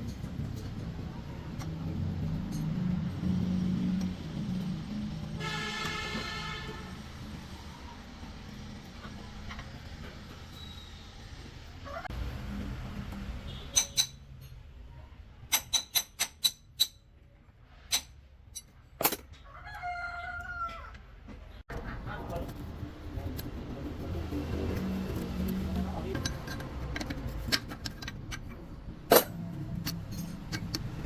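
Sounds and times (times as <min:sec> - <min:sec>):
rooster crowing: 0:19.4 - 0:21.0.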